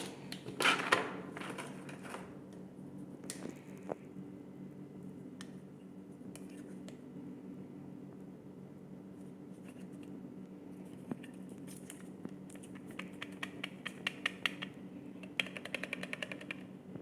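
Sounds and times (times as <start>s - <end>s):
charger electrical hum: 0.0s - 17.0s.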